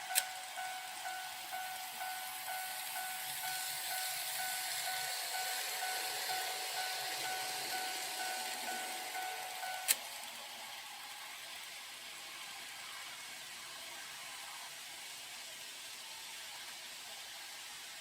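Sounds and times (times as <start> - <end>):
level crossing warning bell: 0.0 - 10.0
model train rolling hiss: 0.0 - 18.0.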